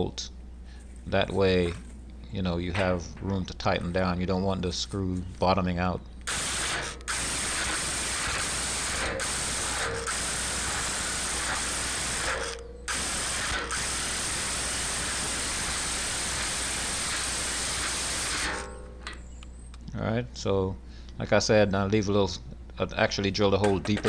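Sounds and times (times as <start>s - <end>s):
hammer drill boring into concrete: 6.3s - 18.8s.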